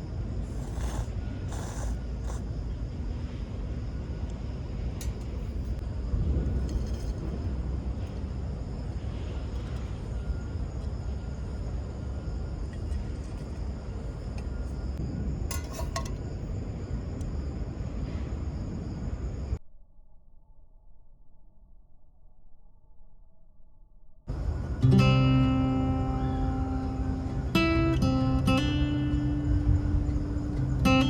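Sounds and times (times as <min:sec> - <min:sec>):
low outdoor rumble: 0:00.0 - 0:19.6, 0:24.2 - 0:31.0
light ringing clinks: 0:05.0 - 0:05.8, 0:15.5 - 0:16.3.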